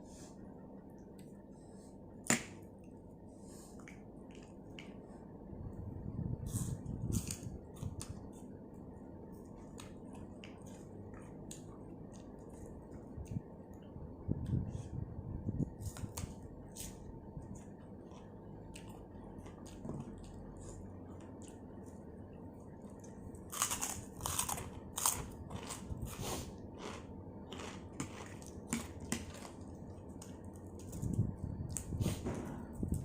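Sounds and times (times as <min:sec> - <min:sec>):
person chewing crunchy food: 0:15.9 - 0:32.2.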